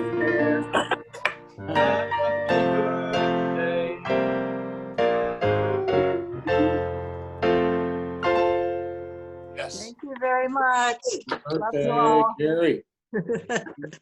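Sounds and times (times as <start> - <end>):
piano playing chords: 0.0 - 9.8.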